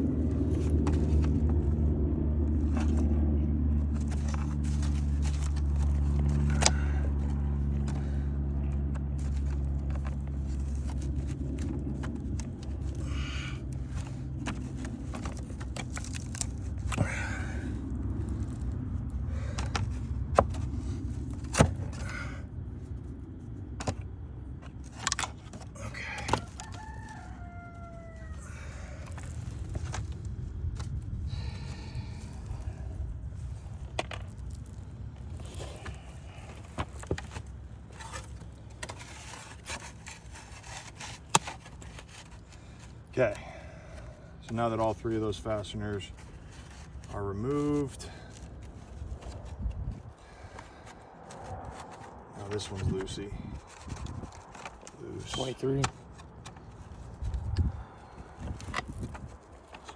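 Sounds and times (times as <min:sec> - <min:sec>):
low motor hum: 0:00.0 - 0:59.9.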